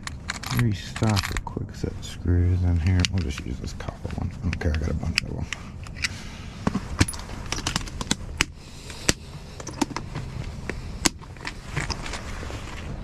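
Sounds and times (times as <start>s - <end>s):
metal lock parts clicking and rattling: 0.0s - 1.5s, 4.5s - 6.2s, 7.0s - 8.5s, 9.6s - 10.1s.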